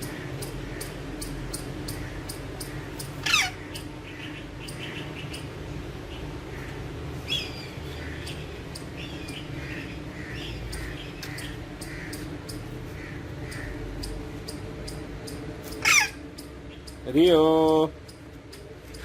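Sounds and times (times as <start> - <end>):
parakeet calling: 0.0 - 19.0
steady hum: 0.0 - 19.0
faint even ticking: 13.4 - 19.0.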